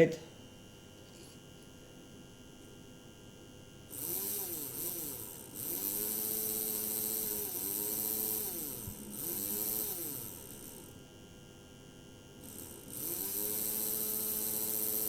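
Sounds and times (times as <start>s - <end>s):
small electric motor gear whirring: 3.8s - 11.5s, 12.4s - 15.0s.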